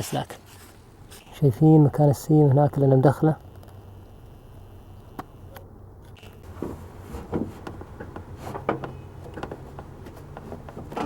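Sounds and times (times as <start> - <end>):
hands rustling among wiring: 6.3 - 11.0.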